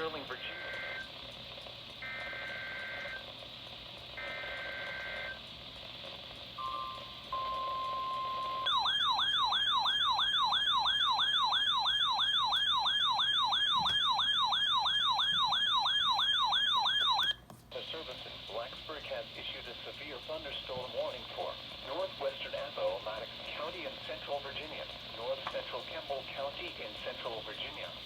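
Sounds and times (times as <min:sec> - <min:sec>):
siren-like alert tone: 0:06.6 - 0:17.4.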